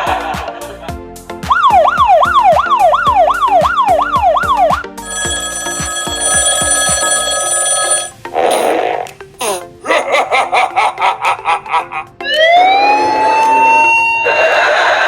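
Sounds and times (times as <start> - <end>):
background music with steady beat: 0.0 - 14.3
wailing siren effect: 1.5 - 4.9, 12.2 - 15.0
steady electronic ringing tone: 1.5 - 8.2.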